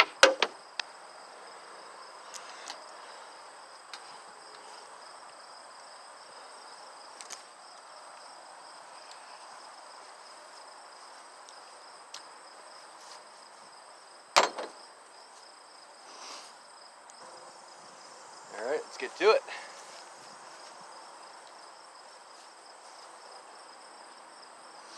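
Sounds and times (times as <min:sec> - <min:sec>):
sharp knocks: 0:00.0 - 0:00.6, 0:14.4 - 0:14.8
crickets chirring: 0:00.0 - 0:24.9.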